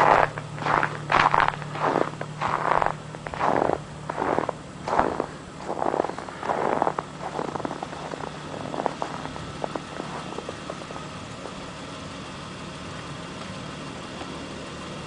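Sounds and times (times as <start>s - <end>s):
short crunching clicks: 0.0s - 10.5s
car engine idling: 0.0s - 15.0s.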